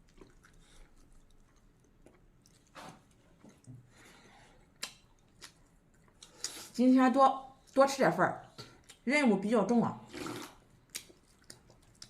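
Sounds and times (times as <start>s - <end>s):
faint chewing: 0.0s - 6.8s, 10.1s - 12.0s.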